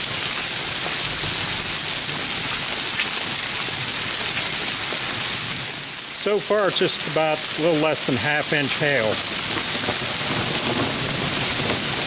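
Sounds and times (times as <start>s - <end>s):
hail pelting down: 0.0s - 12.0s.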